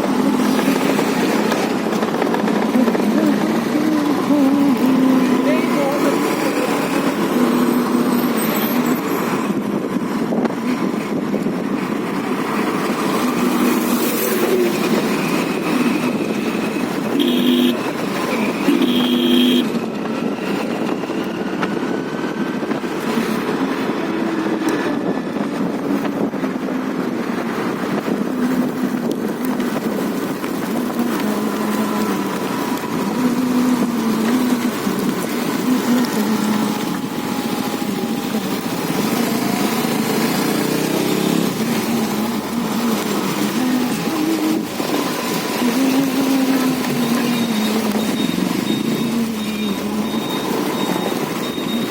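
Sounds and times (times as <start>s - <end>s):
wind and road noise: 0.0s - 51.9s
scooter engine running: 10.9s - 19.8s, 22.8s - 51.9s
horn honks: 17.1s - 19.7s.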